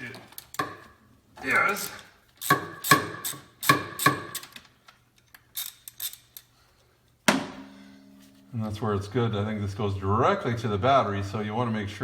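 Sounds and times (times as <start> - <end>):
wrench clicking on a nut: 2.4 - 4.6, 5.2 - 6.5.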